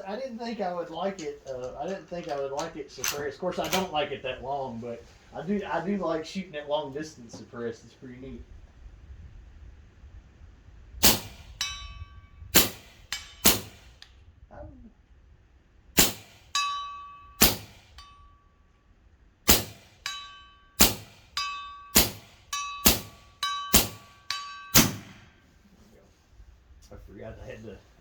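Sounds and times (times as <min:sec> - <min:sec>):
suppressed airgun shots: 0:11.0 - 0:11.6, 0:12.6 - 0:14.0, 0:16.0 - 0:16.6, 0:17.4 - 0:18.0, 0:19.5 - 0:20.0, 0:20.8 - 0:21.4, 0:22.0 - 0:25.4
pellet ringing metal target: 0:11.0 - 0:14.0, 0:16.0 - 0:18.6, 0:19.5 - 0:25.6.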